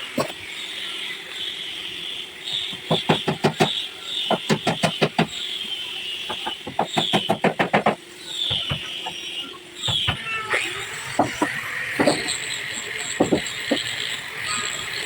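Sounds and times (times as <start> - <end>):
hammering on wood: 2.7 - 5.4, 6.3 - 9.2, 11.2 - 12.3, 13.2 - 13.8.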